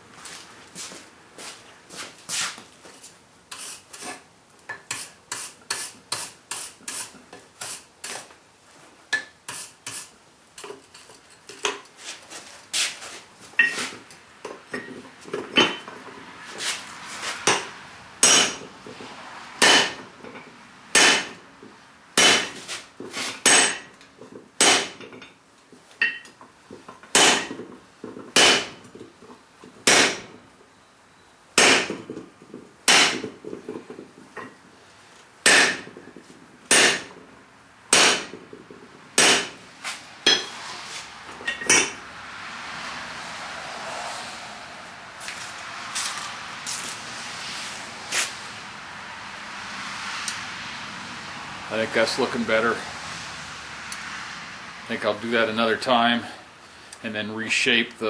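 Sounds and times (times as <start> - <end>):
hammer striking hot steel on anvil: 17.4 - 18.7, 19.6 - 20.1, 20.9 - 21.4, 22.2 - 22.6, 23.4 - 24.0, 24.6 - 25.0, 27.1 - 27.6, 28.4 - 28.8, 29.8 - 30.3, 31.6 - 32.1, 32.9 - 33.3, 35.4 - 35.9, 36.7 - 37.2, 37.9 - 38.4, 39.2 - 39.6, 40.2 - 40.6.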